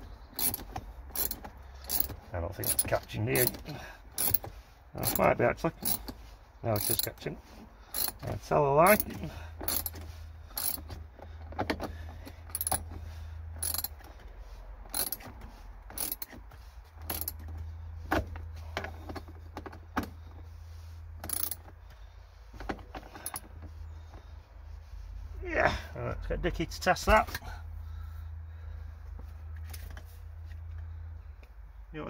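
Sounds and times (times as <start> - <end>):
metallic clicks of seat belt fittings: 0.3 - 6.2, 8.9 - 13.0, 13.6 - 14.3, 14.9 - 20.3, 21.2 - 21.8, 22.5 - 23.7.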